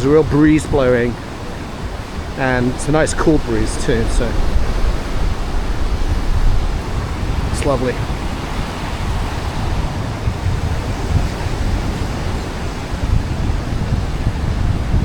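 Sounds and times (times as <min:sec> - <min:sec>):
waves breaking on a beach: 0:00.0 - 0:15.0
wind buffeting the microphone: 0:00.0 - 0:15.0.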